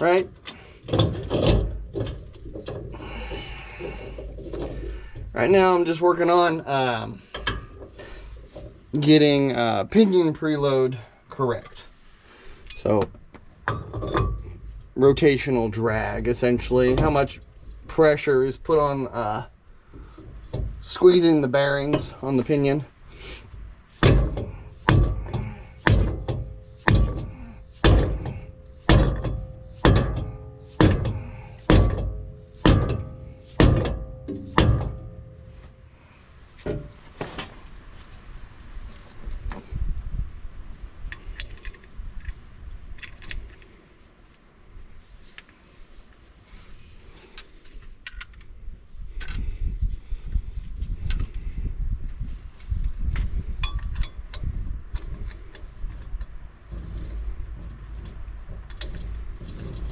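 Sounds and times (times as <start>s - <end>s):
metal tools clinking: 12.6s - 13.0s, 41.1s - 42.4s, 43.0s - 43.7s
hammer striking steel: 24.0s - 35.8s.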